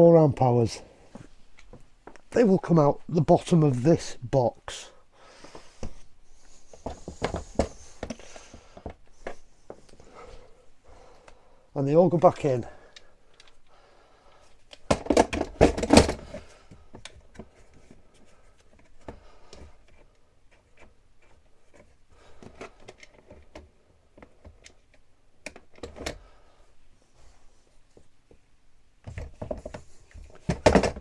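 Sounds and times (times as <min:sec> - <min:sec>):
hard plastic clicks and knocks: 0:29.1 - 0:31.0.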